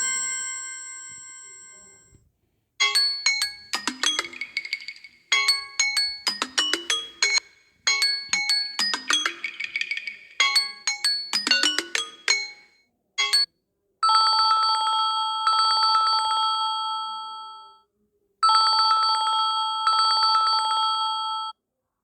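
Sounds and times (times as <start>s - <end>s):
chiming melodic ringtone: 0.0s - 2.0s, 2.8s - 13.5s, 18.4s - 21.6s
electronic telephone ringtone trilling: 2.8s - 17.8s.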